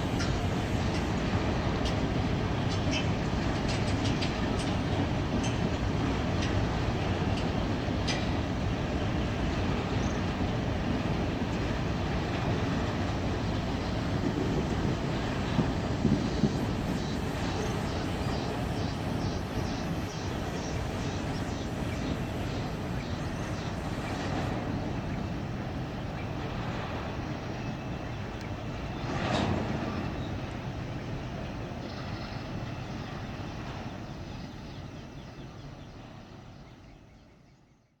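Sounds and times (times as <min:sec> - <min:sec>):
train wheels rumbling on rails: 0:00.0 - 0:24.8.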